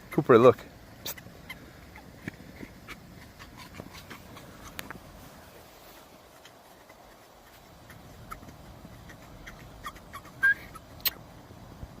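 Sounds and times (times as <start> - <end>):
squeaky toy ball squeaking: 1.0 - 4.8, 6.4 - 10.9
light tapping sounds: 1.0 - 5.2.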